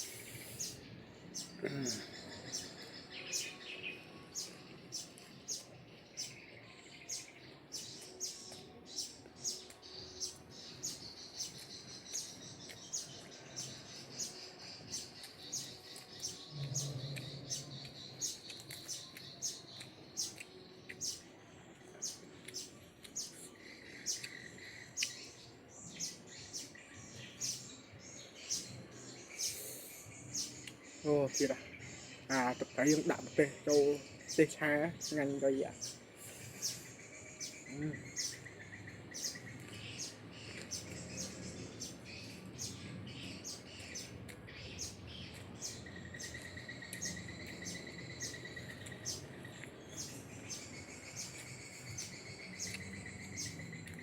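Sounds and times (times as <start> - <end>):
crunchy chewing: 7.9 - 14.1, 15.0 - 21.4, 22.1 - 25.3, 39.4 - 42.4, 43.1 - 54.0.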